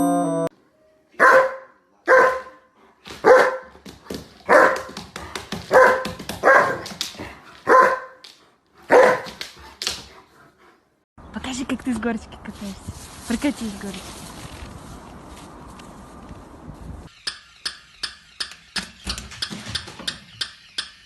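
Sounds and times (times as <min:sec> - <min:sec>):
dog barking: 0:01.2 - 0:03.8, 0:04.5 - 0:05.0, 0:05.7 - 0:06.9, 0:07.6 - 0:08.2, 0:08.9 - 0:09.4.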